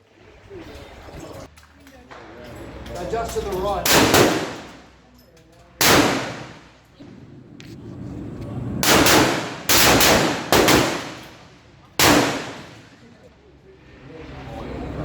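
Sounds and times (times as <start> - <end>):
rifle shots echoing: 3.8 - 4.9, 5.8 - 6.9, 8.8 - 13.0.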